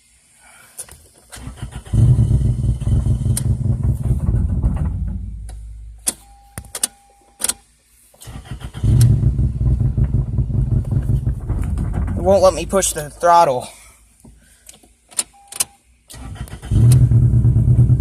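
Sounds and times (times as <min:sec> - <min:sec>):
car engine starting: 0:01.2 - 0:06.4, 0:08.2 - 0:13.8, 0:16.1 - 0:18.0.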